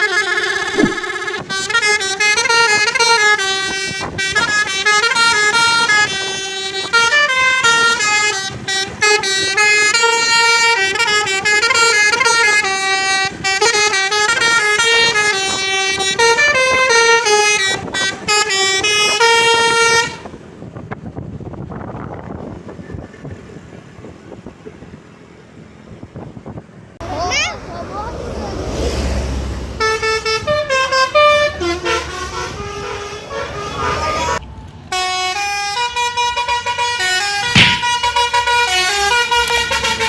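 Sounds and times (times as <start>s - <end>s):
vehicle hum: 0.0s - 2.8s, 20.5s - 40.0s
multi-tone bus horn tune: 0.0s - 20.5s, 29.8s - 40.0s.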